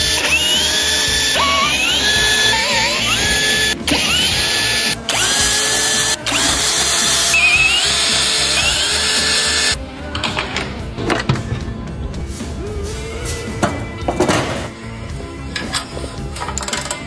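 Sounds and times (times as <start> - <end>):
power tool whining: 0.0 - 9.8.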